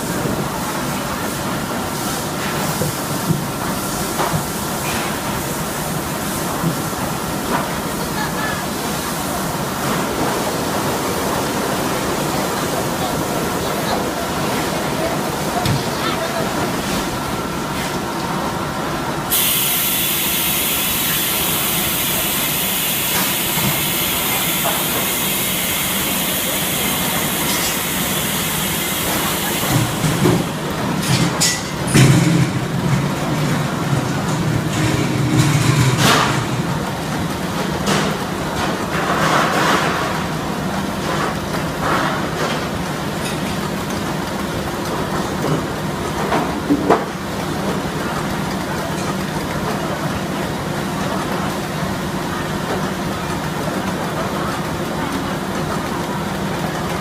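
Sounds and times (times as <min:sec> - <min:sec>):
machinery humming: 0:03.2 - 0:38.6
sharp hisses or clacks: 0:19.3 - 0:30.2.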